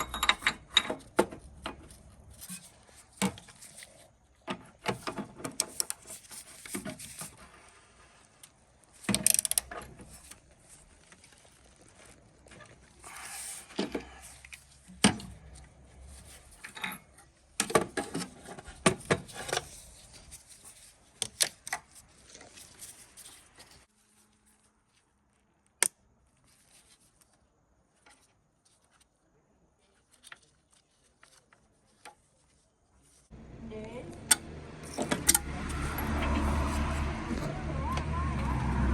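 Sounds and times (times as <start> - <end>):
metallic clicks and clanks of tools: 0.0 - 1.8, 9.1 - 9.8, 34.2 - 36.5.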